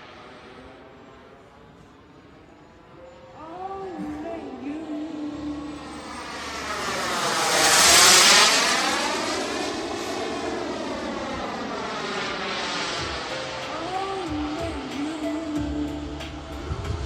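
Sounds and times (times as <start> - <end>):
jet passing by: 3.8 - 17.0.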